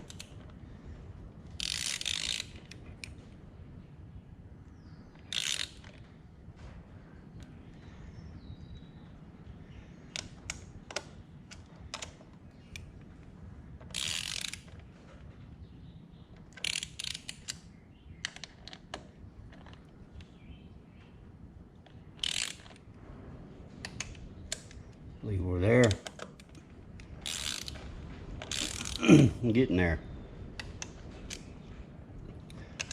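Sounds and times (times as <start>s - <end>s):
torque wrench ratchet clicking: 1.6s - 2.7s, 5.3s - 5.8s, 13.9s - 14.7s, 16.6s - 17.6s, 22.2s - 22.7s, 27.2s - 27.8s, 28.5s - 29.0s
sharp clicks: 25.8s - 29.0s.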